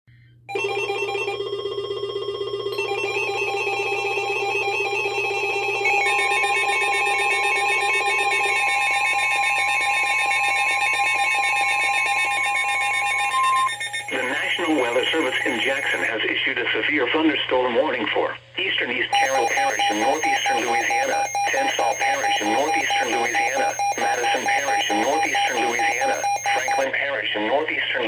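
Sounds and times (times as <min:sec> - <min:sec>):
warbling alarm with beeps: 0:00.5 - 0:16.1, 0:19.2 - 0:26.9
steady high attention tone: 0:05.4 - 0:16.1, 0:19.2 - 0:26.9.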